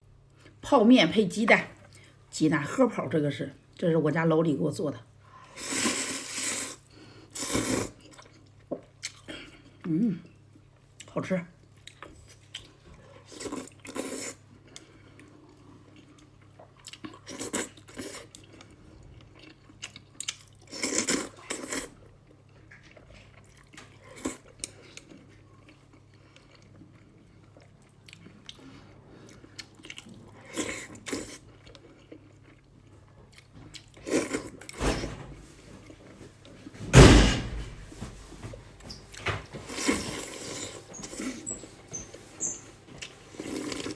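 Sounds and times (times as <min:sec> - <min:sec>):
person chewing noodles: 0:05.4 - 0:34.8, 0:39.7 - 0:43.9.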